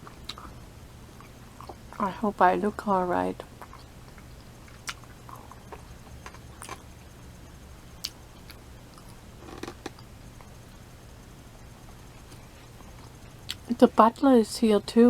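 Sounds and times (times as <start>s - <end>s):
mouth clicks chewing: 0.1s - 0.6s, 3.6s - 6.8s.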